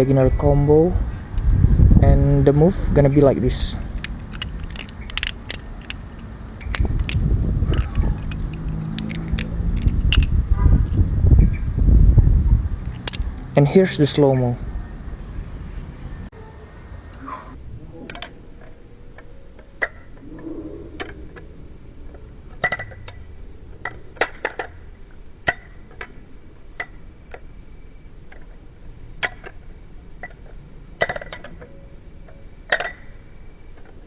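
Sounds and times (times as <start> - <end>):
butterfly knife handles clacking: 3.2 - 11.0, 12.8 - 14.4.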